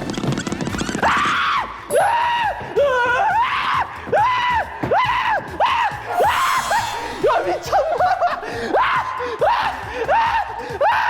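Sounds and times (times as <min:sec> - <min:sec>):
high-pitched voice shrieking: 0:05.3 - 0:09.7.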